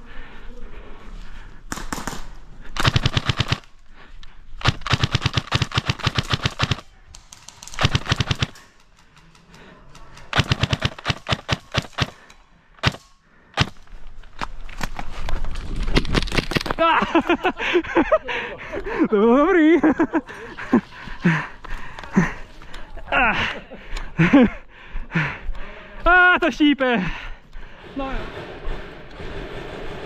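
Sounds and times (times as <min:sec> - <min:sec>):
airsoft gun automatic fire: 0:01.7 - 0:03.7, 0:04.6 - 0:06.9, 0:07.6 - 0:08.6, 0:10.3 - 0:12.2, 0:12.8 - 0:13.0.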